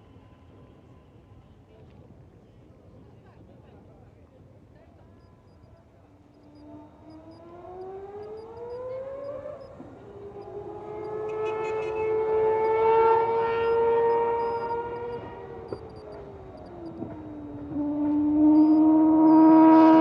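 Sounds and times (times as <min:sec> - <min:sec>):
rotary engine accelerating: 0:06.5 - 0:20.0.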